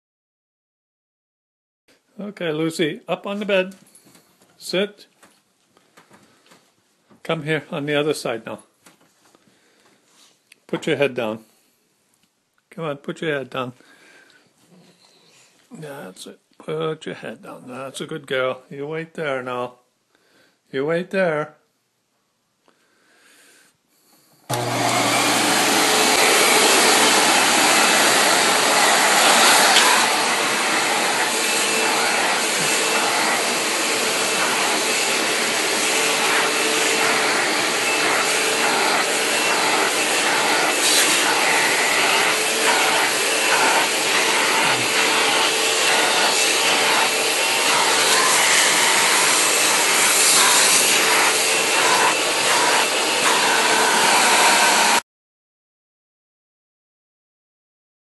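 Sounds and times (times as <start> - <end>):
vacuum cleaner running: 24.4 - 55.0.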